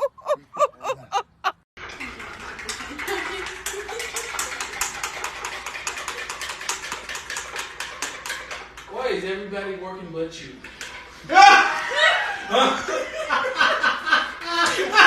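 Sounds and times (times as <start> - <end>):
person laughing: 0.0 - 1.6
clatter and small clicks: 1.8 - 8.9.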